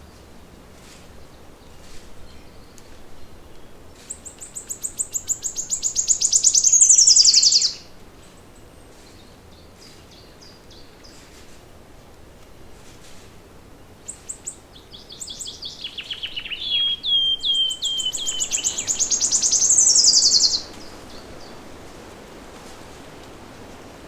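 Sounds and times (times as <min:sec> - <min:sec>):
forest background hiss: 0:00.0 - 0:24.0
songbird trilling: 0:04.2 - 0:07.8, 0:14.1 - 0:21.6.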